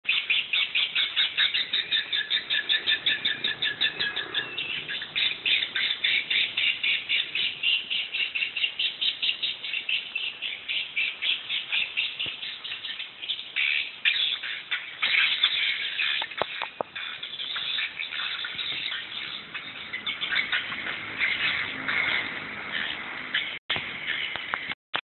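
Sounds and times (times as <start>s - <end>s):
fast high sharp bird chirps: 0.1s - 16.2s.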